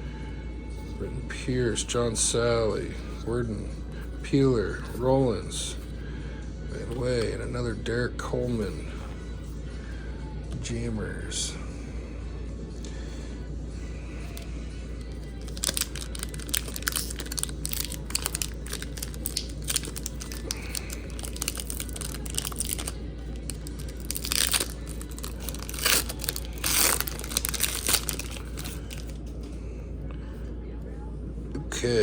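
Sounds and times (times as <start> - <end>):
wrapper crinkling and tearing: 15.1 - 29.2.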